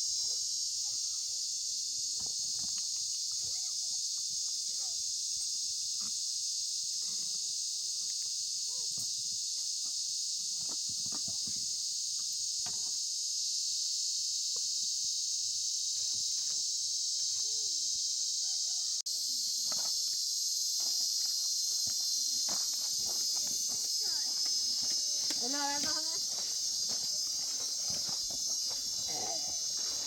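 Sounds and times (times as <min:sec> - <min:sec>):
high-pitched insect chorus: 0:00.0 - 0:30.0
faint voices: 0:23.3 - 0:30.0.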